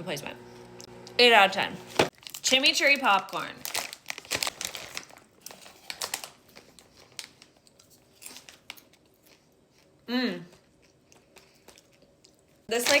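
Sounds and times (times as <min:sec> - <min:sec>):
snack bag crinkling: 0:02.0 - 0:09.9, 0:10.8 - 0:13.0.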